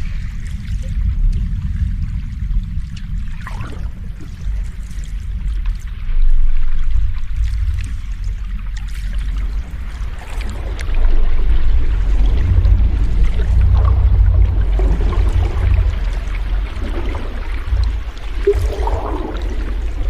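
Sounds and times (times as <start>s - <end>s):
sea waves washing in: 9.7s - 20.0s.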